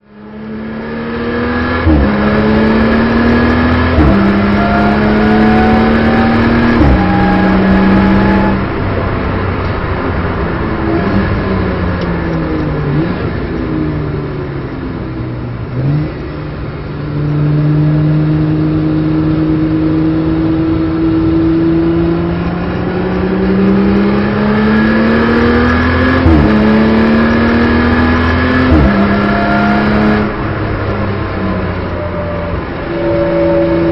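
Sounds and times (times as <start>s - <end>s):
car engine accelerating: 0.0s - 33.9s.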